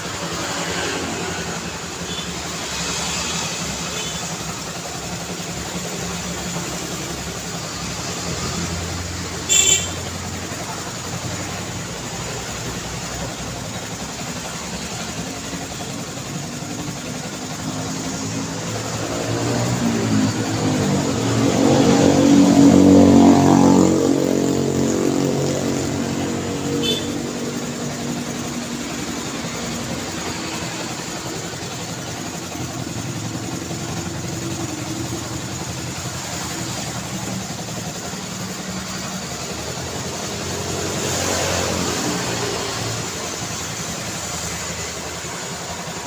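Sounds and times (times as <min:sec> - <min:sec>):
steady traffic rumble: 0:00.0 - 0:46.0
vehicle passing close: 0:10.1 - 0:46.0.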